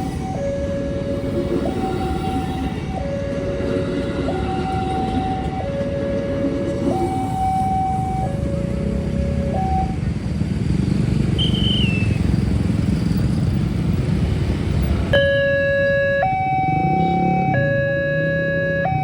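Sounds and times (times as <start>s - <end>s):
level crossing alarm two tones: 15.2s - 19.0s.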